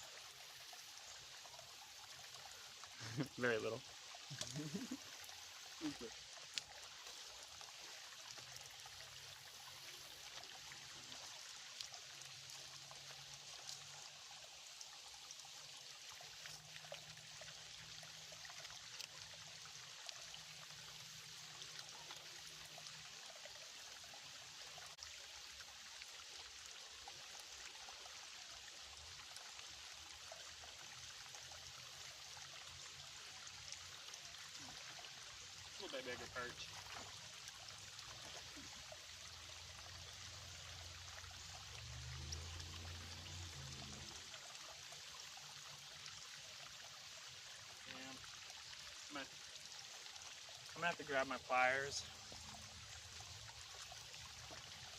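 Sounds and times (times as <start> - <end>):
creek trickling: 0.0 - 54.9.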